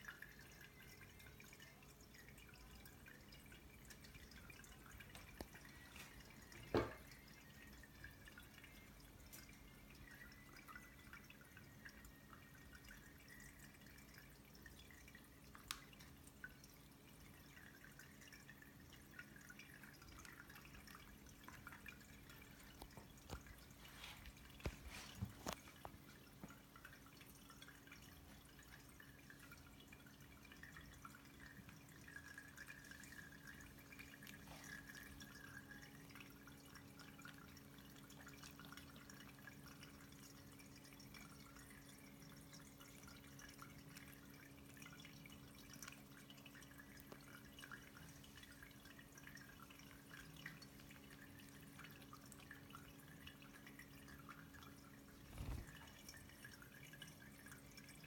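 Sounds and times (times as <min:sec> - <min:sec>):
low pump hum: 0:00.0 - 0:58.0
water trickling and dripping: 0:00.0 - 0:58.0.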